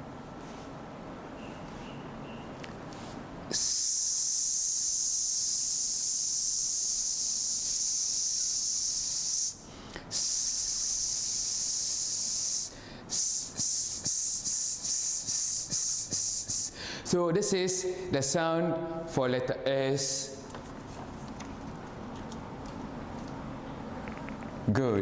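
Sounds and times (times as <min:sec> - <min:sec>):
person hissing s sound: 0:03.5 - 0:16.9.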